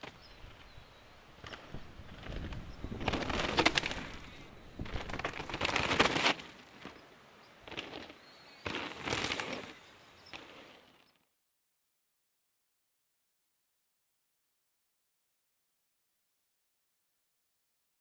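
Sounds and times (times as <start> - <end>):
bike tyres rushing over dirt: 0.0 - 11.2
bike rattling clicks: 1.4 - 6.9.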